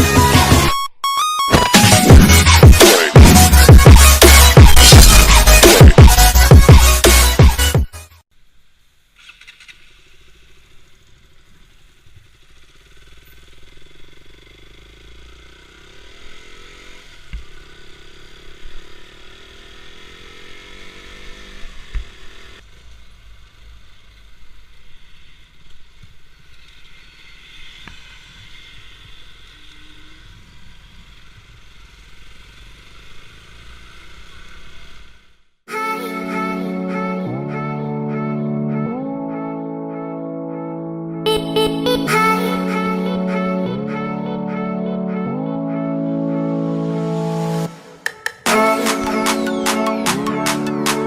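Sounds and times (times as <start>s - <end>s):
motorcycle engine accelerating: 1.5s - 7.7s, 9.1s - 35.6s, 40.8s - 51.0s
road and wind noise: 9.1s - 35.5s.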